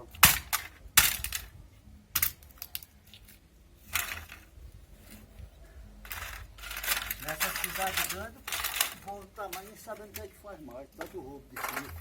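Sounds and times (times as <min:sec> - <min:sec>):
metal rattle: 0:00.2 - 0:03.3, 0:03.9 - 0:05.2, 0:06.0 - 0:10.4, 0:11.0 - 0:12.0
scrap metal clinking: 0:06.0 - 0:10.4, 0:11.0 - 0:12.0.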